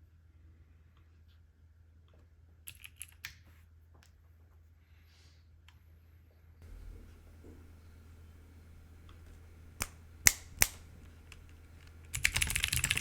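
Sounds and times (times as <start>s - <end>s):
mechanical keyboard clicks: 2.7s - 3.2s, 10.3s - 13.0s
steady low hum: 6.0s - 13.0s.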